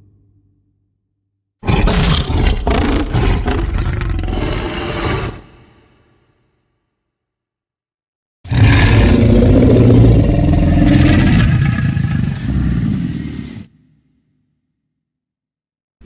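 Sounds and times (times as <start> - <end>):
deep dinosaur roar: 1.6 - 5.8, 8.5 - 13.7.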